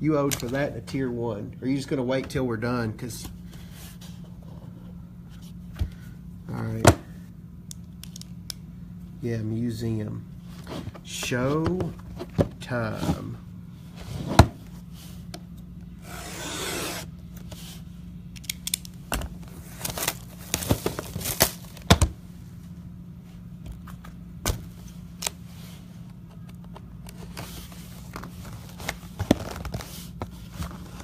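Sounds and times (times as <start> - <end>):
cardboard scraping: 16.0 - 17.7
plastic wrap tearing and crackling: 19.6 - 21.9.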